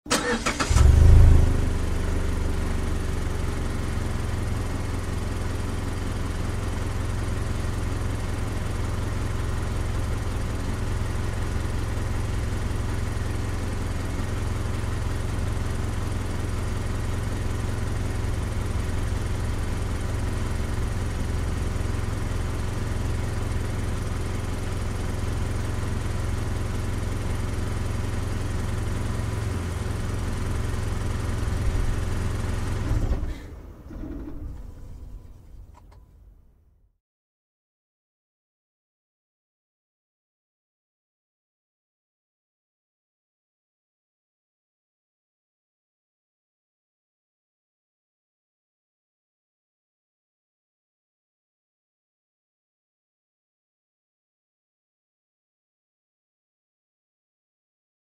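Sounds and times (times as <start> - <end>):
car engine starting and idling: 0.1 - 36.5.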